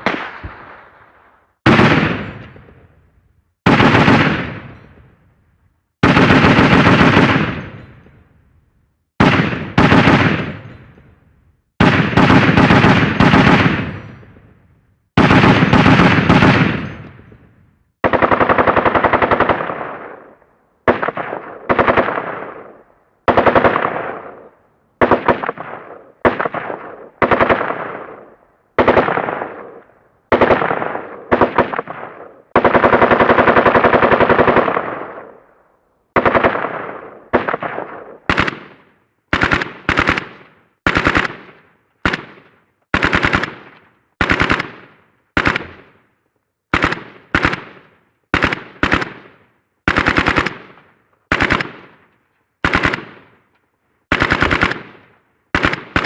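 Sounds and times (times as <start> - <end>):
automatic gunfire bursts: 3.6 - 4.6, 6.0 - 7.7, 9.2 - 10.6, 11.8 - 14.0, 15.2 - 17.0, 18.0 - 20.2, 23.3 - 28.1, 28.8 - 29.7, 30.3 - 35.2, 36.2 - 46.0, 46.7 - 52.0, 52.6 - 53.3, 54.1 - 56.0.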